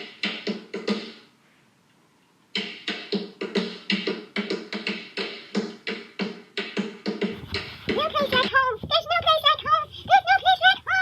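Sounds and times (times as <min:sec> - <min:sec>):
tap-dance taps: 0:07.3 - 0:11.0.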